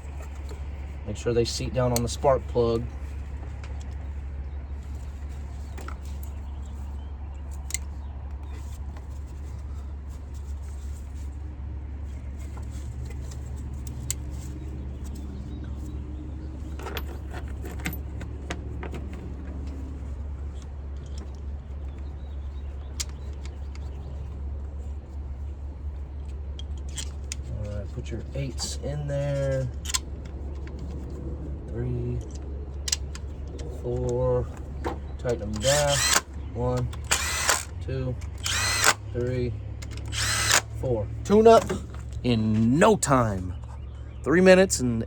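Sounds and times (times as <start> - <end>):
coil packs clicking into place: 7.5 - 9.1, 29.7 - 31.2, 32.2 - 39.1, 39.8 - 40.8.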